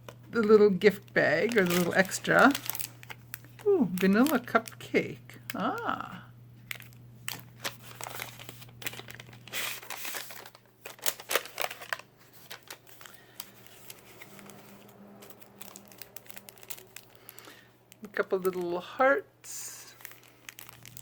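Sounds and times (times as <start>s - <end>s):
packaging crinkling and tearing: 0.1s - 4.9s, 6.6s - 18.7s, 19.7s - 21.0s.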